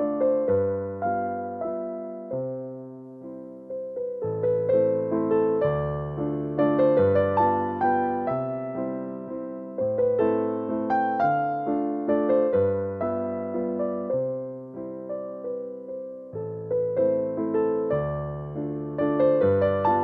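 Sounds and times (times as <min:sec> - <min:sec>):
slow gentle piano melody: 0:00.0 - 0:20.0.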